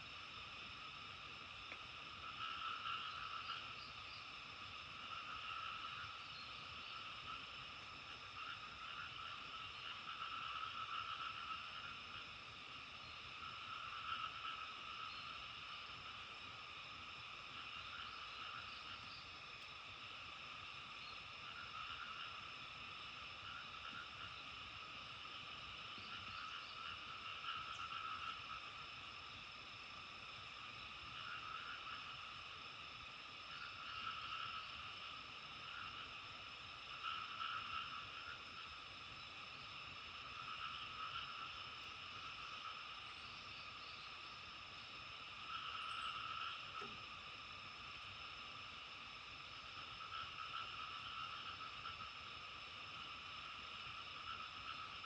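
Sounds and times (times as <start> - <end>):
chorus of frogs calling: 0.0 - 55.0.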